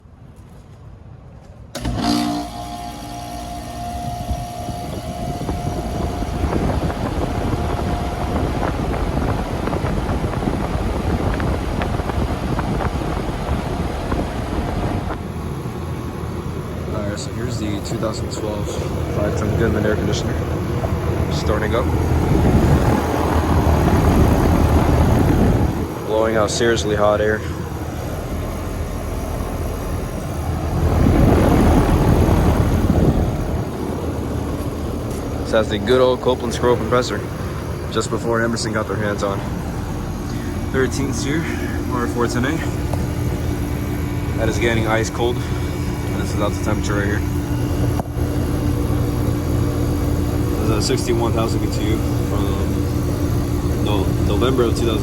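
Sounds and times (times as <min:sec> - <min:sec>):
air conditioner running: 0:00.0 - 0:55.0
rush of air: 0:27.4 - 0:35.4.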